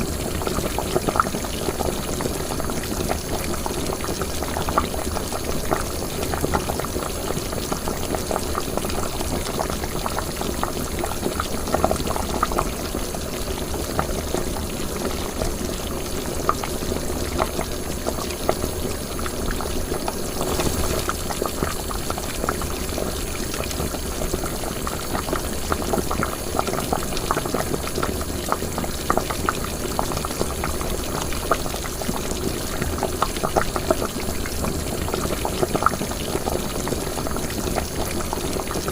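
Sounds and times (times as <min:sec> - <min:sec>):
liquid boiling in a pot: 0:00.0 - 0:38.9.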